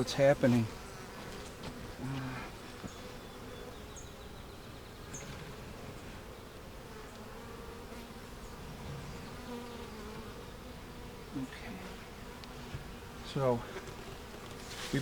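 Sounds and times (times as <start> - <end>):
bees buzzing: 0.0 - 15.0.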